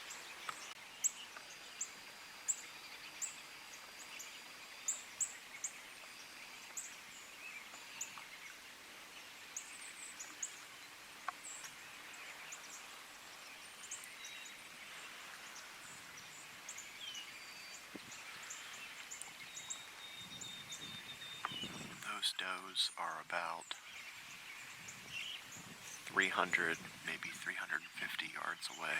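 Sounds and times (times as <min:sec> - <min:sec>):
faint steady hiss: 0:00.0 - 0:28.9
bird chirps: 0:11.3 - 0:28.9.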